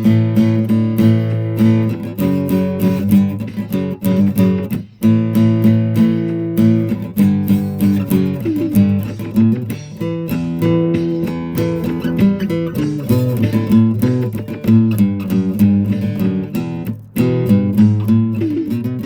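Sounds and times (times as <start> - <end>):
strummed acoustic guitar: 0.0 - 19.0.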